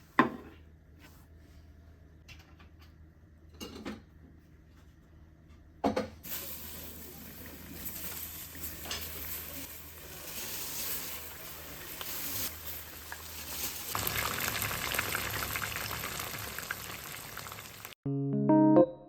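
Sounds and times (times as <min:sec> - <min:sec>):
water sounds: 0:10.6 - 0:18.0.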